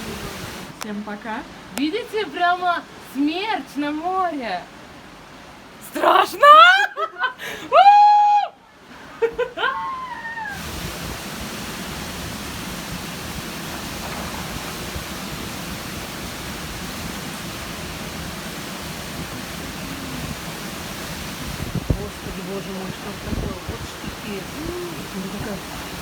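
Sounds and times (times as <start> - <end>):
sea rushing: 0.0 - 0.8, 8.8 - 26.0
wind: 0.0 - 26.0
high-pitched cry falling in pitch: 9.6 - 10.6.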